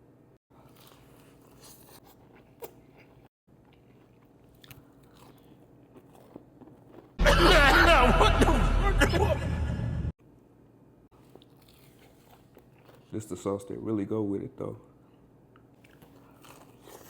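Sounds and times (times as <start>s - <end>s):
chewing and crunching food: 0.5s - 7.2s, 11.1s - 13.8s, 15.0s - 17.0s.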